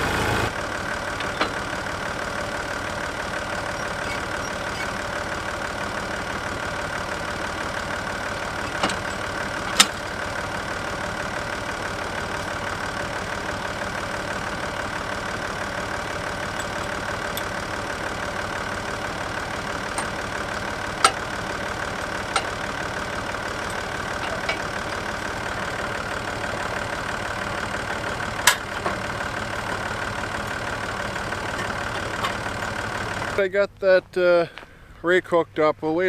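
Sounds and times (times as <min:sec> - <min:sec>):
tractor engine idling: 0:00.0 - 0:35.6.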